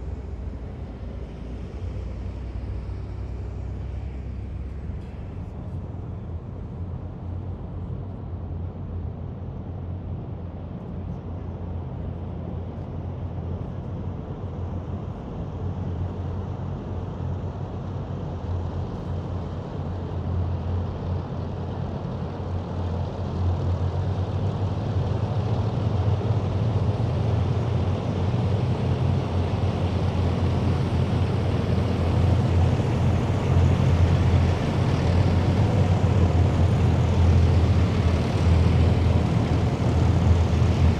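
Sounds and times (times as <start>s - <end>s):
heavy vehicle engines rumbling: 22.4s - 40.9s
road noise: 23.6s - 40.9s.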